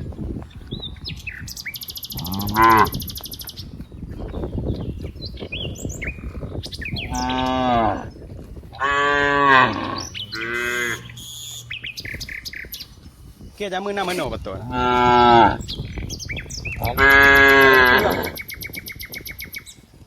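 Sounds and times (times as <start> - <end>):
birds chirping faintly: 0.0 - 19.9
cows mooing: 2.1 - 3.0, 7.1 - 8.1, 8.7 - 11.9, 14.6 - 15.6, 16.8 - 18.4
high buzzing trill: 8.8 - 12.2.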